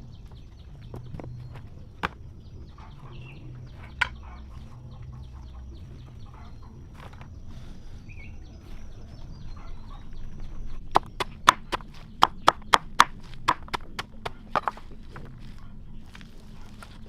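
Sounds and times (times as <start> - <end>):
blade chopping on wood: 10.9 - 14.8.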